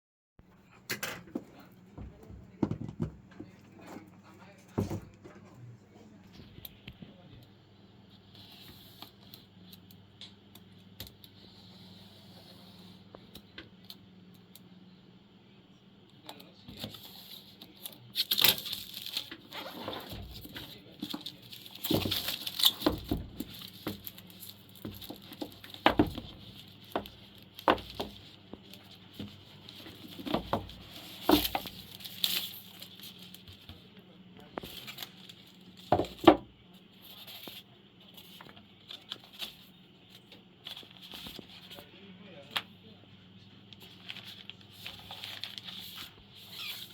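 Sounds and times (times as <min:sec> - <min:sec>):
packaging rustling and crinkling: 0:18.2 - 0:33.7, 0:43.8 - 0:46.9.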